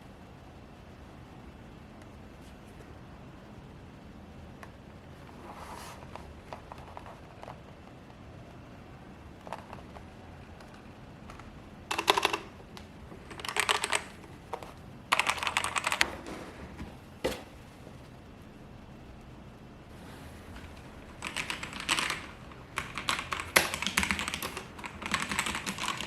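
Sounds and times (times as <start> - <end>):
mechanical keyboard typing: 9.4 - 16.2, 20.7 - 26.0.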